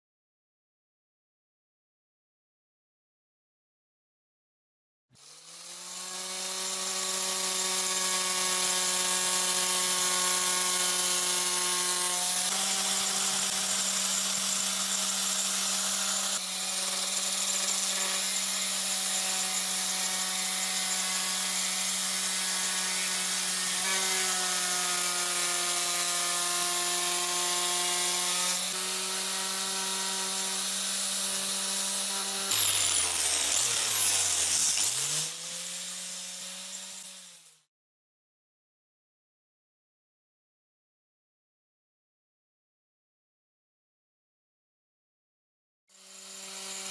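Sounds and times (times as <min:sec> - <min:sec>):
power tool motor whining: 0:26.8 - 0:37.6.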